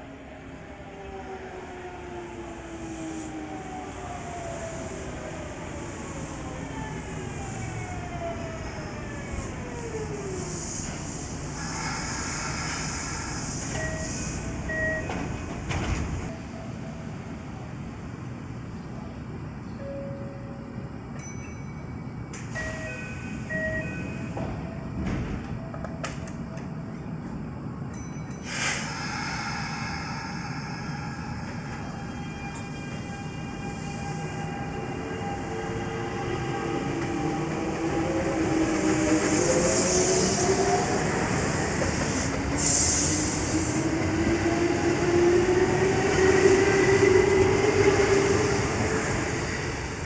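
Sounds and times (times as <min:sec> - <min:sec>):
short air hisses: 0:10.5 - 0:14.4, 0:28.4 - 0:31.4, 0:42.1 - 0:43.8.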